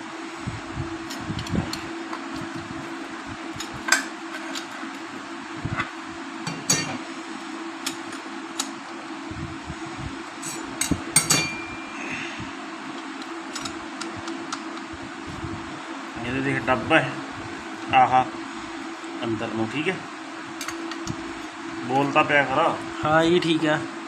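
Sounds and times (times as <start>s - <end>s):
metal plates clinking: 6.5s - 7.0s, 11.2s - 12.0s.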